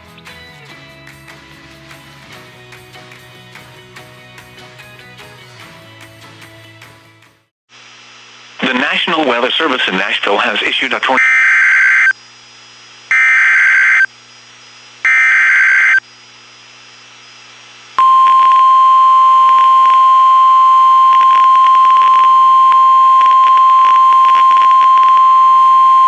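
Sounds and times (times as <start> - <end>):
radio static: 8.5 - 12.2, 13.1 - 14.1, 15.1 - 16.0
buzzing data chirps: 11.1 - 16.1
steady warning alarm tone: 11.2 - 12.2, 13.1 - 14.1, 15.0 - 16.0.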